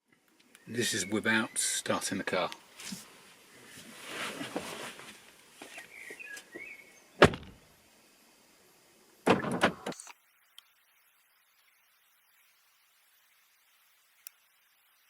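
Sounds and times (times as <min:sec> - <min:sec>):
car door thump: 0:07.2 - 0:07.6.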